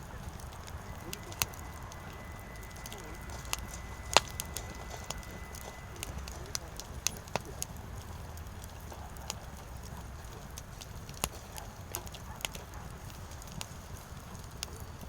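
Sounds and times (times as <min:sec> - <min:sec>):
crackling pops: 0:00.0 - 0:15.0
firewood burning rumble: 0:00.0 - 0:15.0.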